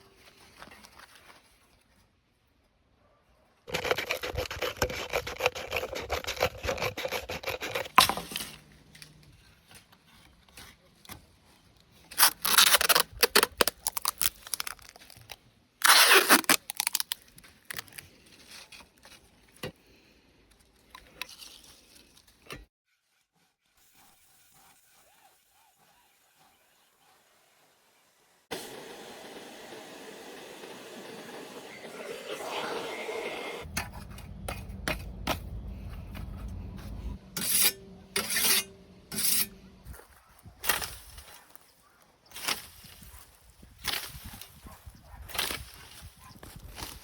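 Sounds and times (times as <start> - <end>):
tool scraping a scythe: 3.7 - 8.7, 36.1 - 41.6, 42.3 - 44.7.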